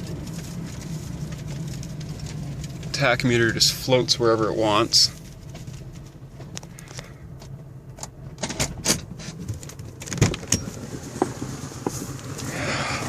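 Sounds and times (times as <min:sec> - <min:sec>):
car engine idling roughly: 0:10.5 - 0:13.0.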